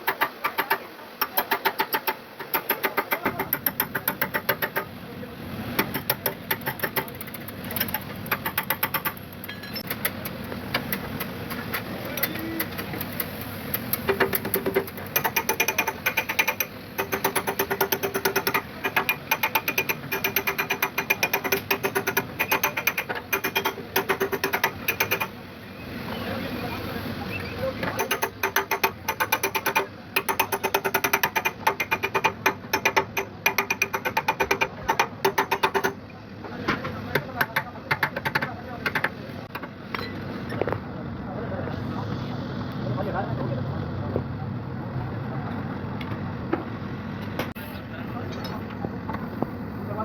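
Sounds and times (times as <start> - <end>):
hammering on metal: 14.0 - 25.4, 27.8 - 36.0.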